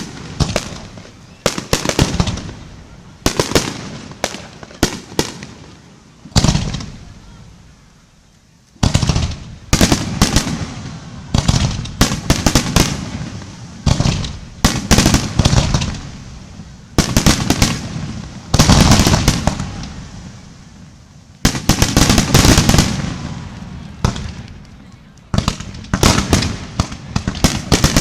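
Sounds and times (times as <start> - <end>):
fireworks bursting: 0.0 - 28.0.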